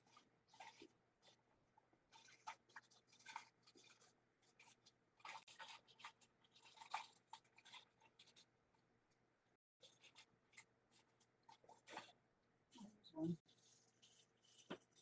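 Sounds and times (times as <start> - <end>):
rustling and scraping of objects: 9.8 - 15.0.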